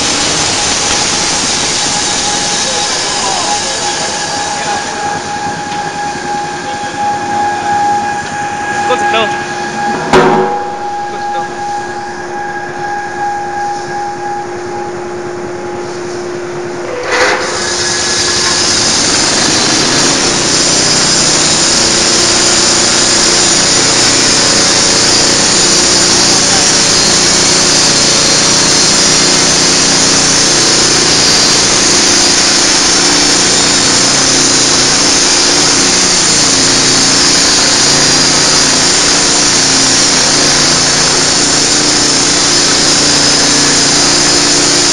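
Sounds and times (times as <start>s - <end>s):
saw blade cutting log: 0.0s - 6.4s, 17.0s - 44.9s
band sawmill machine whine: 0.0s - 44.9s
knock: 10.0s - 10.6s.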